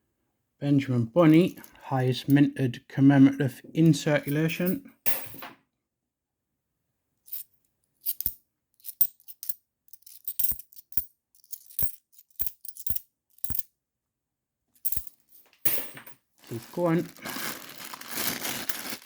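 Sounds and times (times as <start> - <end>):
coins clinking: 4.3 - 5.5, 7.3 - 13.7, 14.8 - 17.0.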